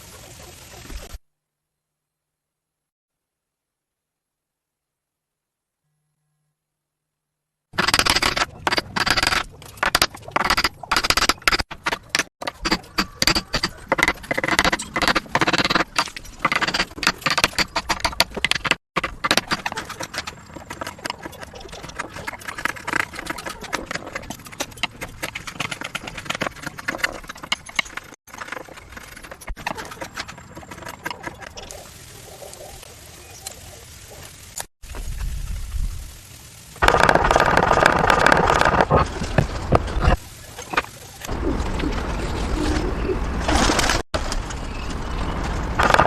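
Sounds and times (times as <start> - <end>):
hand tools knocking and scraping wood: 7.8 - 31.6.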